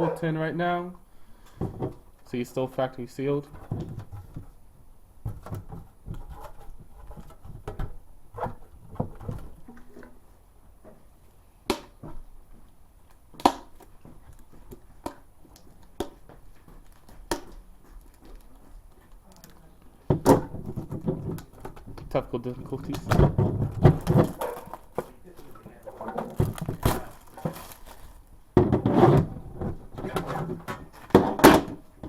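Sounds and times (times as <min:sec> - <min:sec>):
plastic wrap crinkling: 0:16.6 - 0:19.9, 0:22.6 - 0:28.4.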